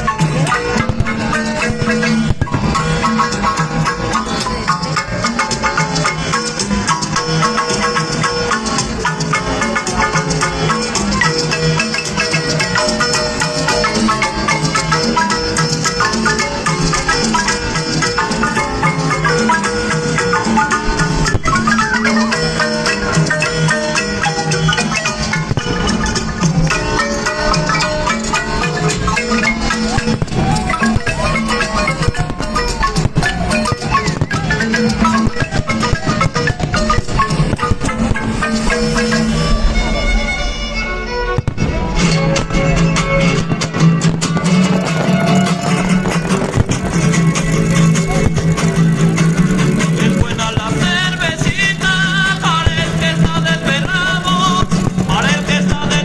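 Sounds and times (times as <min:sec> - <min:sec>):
marimba-like mallet percussion: 0:00.0 - 0:56.0
rattles: 0:41.4 - 0:56.0.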